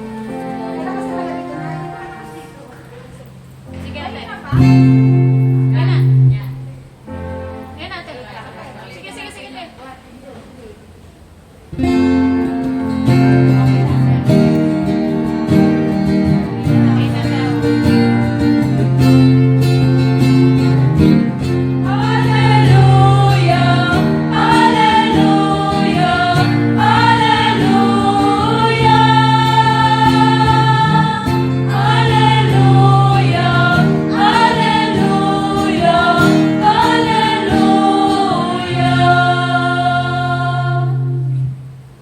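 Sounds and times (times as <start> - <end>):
choir singing a hymn: 0.0 - 3.0, 13.6 - 41.6
guitar accompaniment: 0.0 - 9.0, 11.6 - 42.0.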